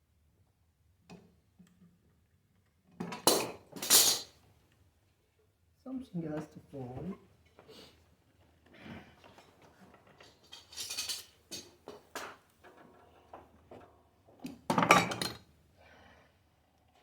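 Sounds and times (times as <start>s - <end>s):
metal parts and tools clinking: 10.2s - 11.7s.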